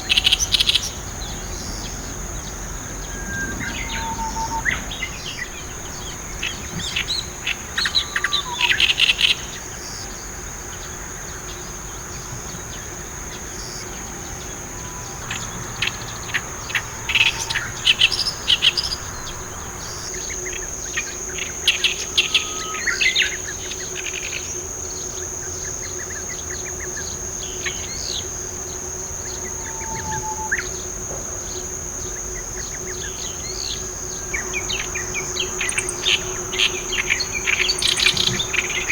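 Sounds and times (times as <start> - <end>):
reed warbler chattering song: 0.0 - 38.9
high-pitched insect buzz: 13.0 - 25.0, 27.0 - 31.0.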